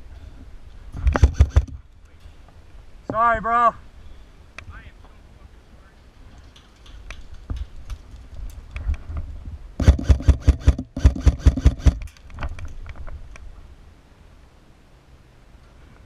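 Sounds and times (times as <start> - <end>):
gearbox whir: 1.0 - 1.8, 9.8 - 12.0
airsoft rifle shots cracking: 1.1 - 1.8, 9.8 - 12.1.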